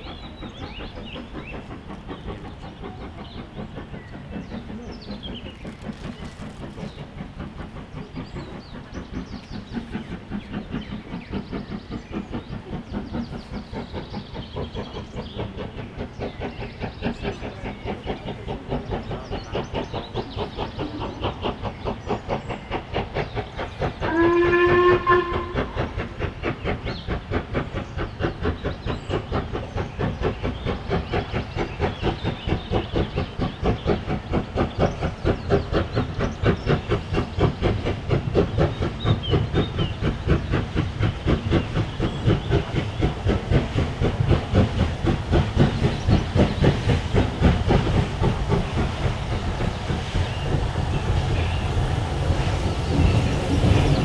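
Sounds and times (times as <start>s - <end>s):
steam locomotive exhaust beats: 0.0s - 54.0s
steam whistle blast: 24.1s - 25.6s.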